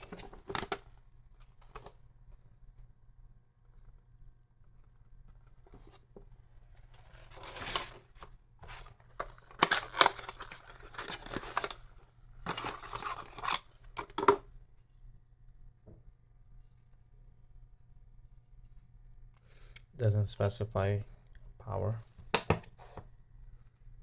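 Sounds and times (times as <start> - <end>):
packaging rustling and scraping: 0.0 - 2.0, 5.4 - 14.4.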